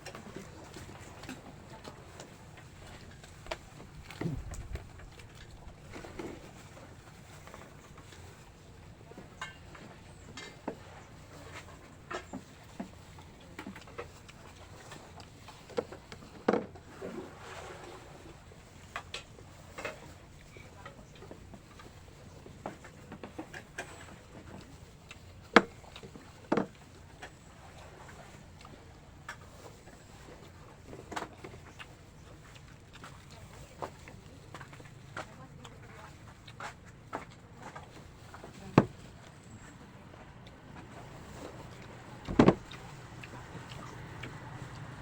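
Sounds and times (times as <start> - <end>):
light clicks and knocks: 33.7 - 45.0.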